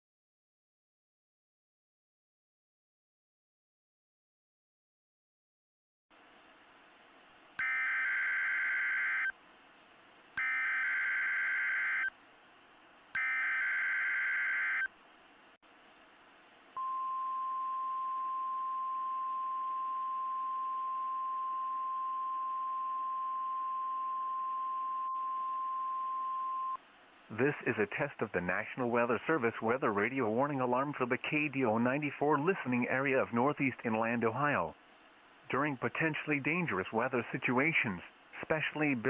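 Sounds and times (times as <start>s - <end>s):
steady warning alarm tone: 7.6s - 9.3s, 10.4s - 12.1s, 13.2s - 14.9s
warbling digital data tones: 10.4s - 12.1s, 13.2s - 14.9s
faint radio hiss: 26.8s - 39.0s.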